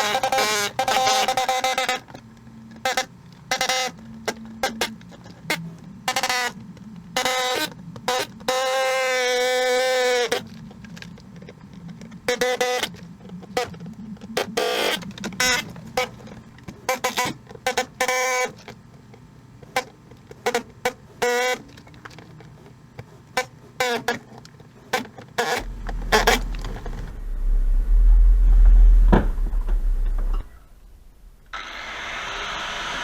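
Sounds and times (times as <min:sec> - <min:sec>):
low machine hum: 0:25.6 - 0:33.0.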